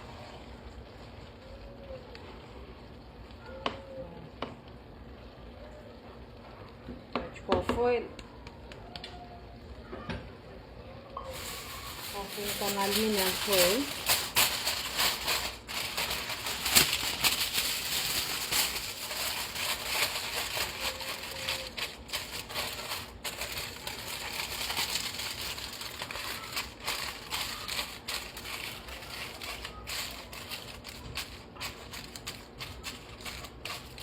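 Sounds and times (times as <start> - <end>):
aluminium foil crinkling: 11.3 - 34.0.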